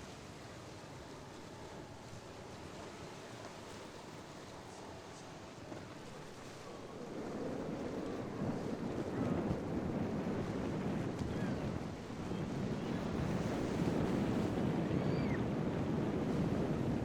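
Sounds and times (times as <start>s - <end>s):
wind buffeting microphone: 5.6s - 17.0s.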